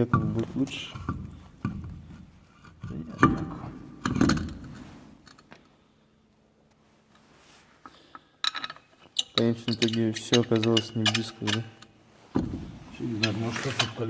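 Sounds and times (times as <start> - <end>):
metallic clicks and knocks: 8.4 - 12.6.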